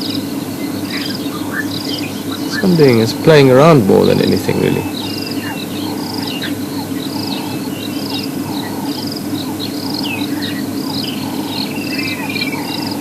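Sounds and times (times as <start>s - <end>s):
cricket-like chirps: 0.0s - 13.0s
steady low hum: 0.0s - 13.0s
sweeping bird calls: 0.0s - 13.0s.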